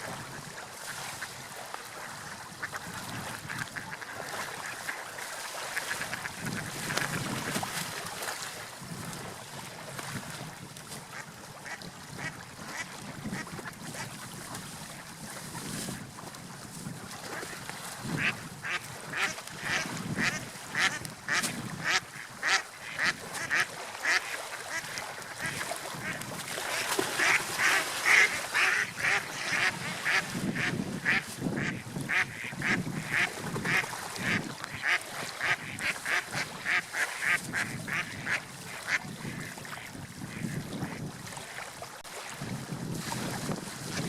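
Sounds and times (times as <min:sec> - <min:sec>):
waterfowl calling: 0:18.2 - 0:41.0.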